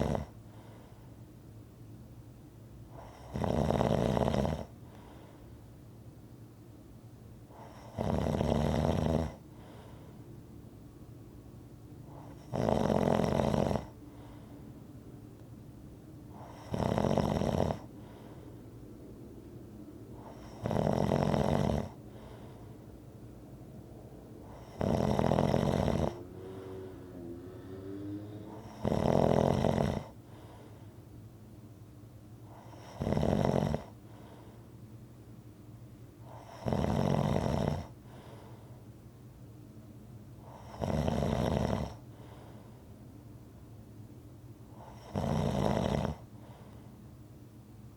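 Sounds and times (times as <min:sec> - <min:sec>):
loud snoring: 0:00.0 - 0:00.4, 0:03.0 - 0:04.8, 0:07.6 - 0:09.4, 0:12.1 - 0:14.0, 0:16.4 - 0:18.2, 0:20.2 - 0:22.5, 0:24.4 - 0:30.7, 0:32.5 - 0:34.0, 0:36.3 - 0:38.0, 0:40.5 - 0:42.0, 0:44.8 - 0:46.3
breathing noise: 0:00.4 - 0:01.2, 0:04.8 - 0:05.6, 0:09.5 - 0:10.4, 0:14.0 - 0:14.8, 0:17.8 - 0:18.8, 0:21.9 - 0:23.2, 0:26.1 - 0:28.9, 0:30.2 - 0:31.0, 0:34.0 - 0:34.8, 0:38.0 - 0:38.9, 0:42.1 - 0:43.0, 0:46.3 - 0:47.0.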